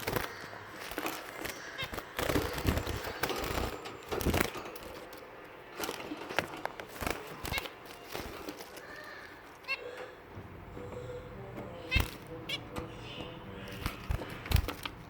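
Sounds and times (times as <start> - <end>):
finch chirp: 0.0 - 4.5, 7.0 - 10.2
birds rustling and clicking: 0.0 - 15.0.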